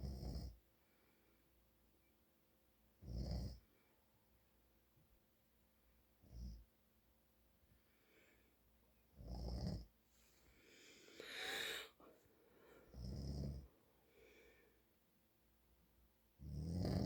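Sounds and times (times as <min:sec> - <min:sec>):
breathy exhale: 0:10.5 - 0:12.9
man snoring: 0:11.2 - 0:12.0, 0:12.9 - 0:13.7, 0:16.5 - 0:17.0.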